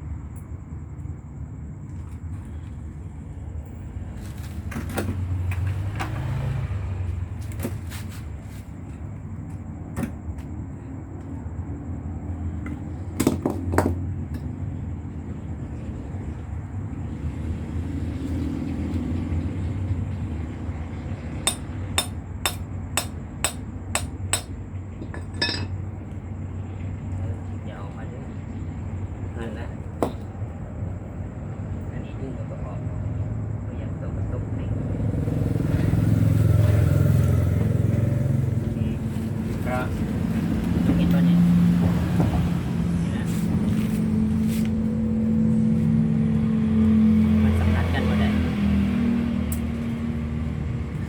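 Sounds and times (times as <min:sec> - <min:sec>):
hammer taps: 0:21.5 - 0:24.5
vehicle engine running: 0:33.0 - 0:51.0.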